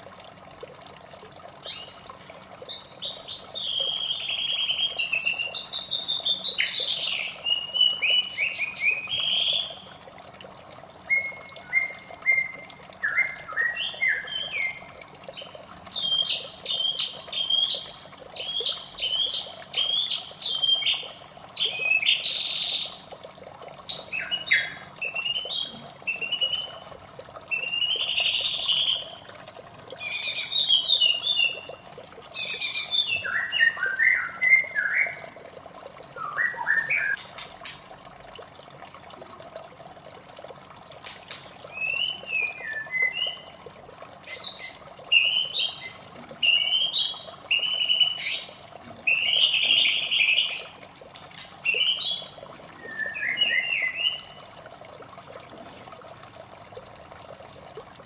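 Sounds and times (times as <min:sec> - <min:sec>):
running water: 0:00.0 - 0:58.0
bird singing whistled phrases: 0:02.8 - 0:09.8, 0:11.1 - 0:14.8, 0:16.0 - 0:17.8, 0:23.9 - 0:26.8, 0:27.5 - 0:29.1, 0:32.4 - 0:35.3, 0:36.2 - 0:37.2, 0:41.7 - 0:43.5, 0:44.3 - 0:50.7, 0:51.7 - 0:54.4.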